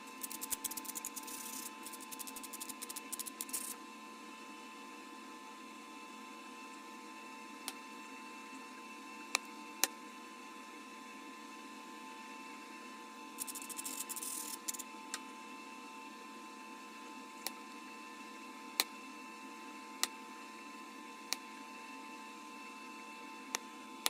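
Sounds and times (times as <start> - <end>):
faint steady hum: 0.0 - 24.0
rapid scraping clicks: 0.1 - 3.8, 13.4 - 14.8.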